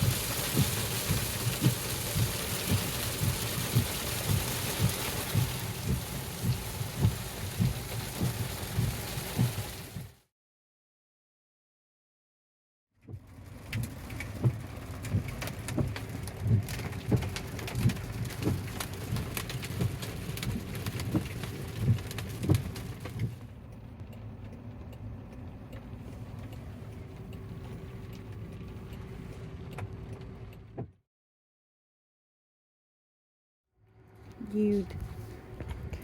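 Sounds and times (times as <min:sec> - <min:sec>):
rain on car roof: 0:00.0 - 0:10.2, 0:13.1 - 0:30.8.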